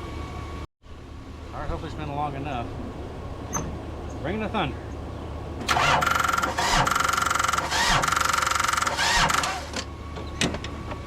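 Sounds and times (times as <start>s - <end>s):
starter motor cranking engine: 5.6s - 9.9s.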